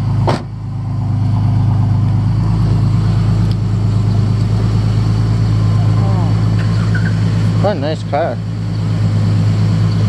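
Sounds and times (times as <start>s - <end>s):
car engine idling: 0.0s - 10.0s.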